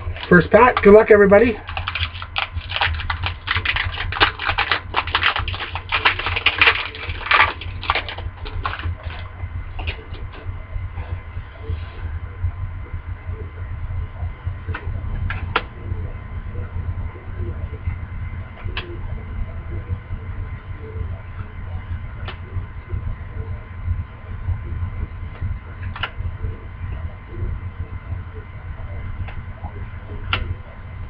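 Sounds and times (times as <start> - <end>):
steady low hum: 0.0 - 31.0
wrapper tearing and crinkling: 1.7 - 9.2.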